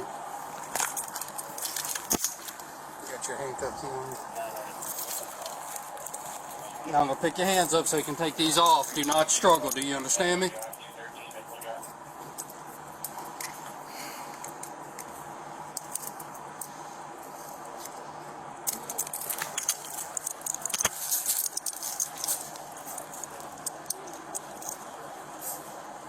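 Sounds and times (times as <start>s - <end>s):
handcuffs and keys rattling: 0.7s - 2.7s, 4.2s - 6.9s, 7.5s - 10.8s, 15.8s - 16.7s, 18.6s - 25.0s.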